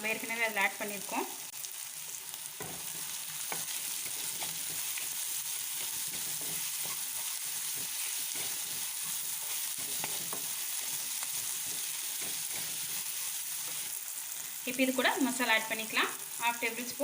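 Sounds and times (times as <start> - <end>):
vegetables sizzling in hot oil: 0.0 - 17.0
stirring knocks and scrapes in pan: 2.5 - 13.9.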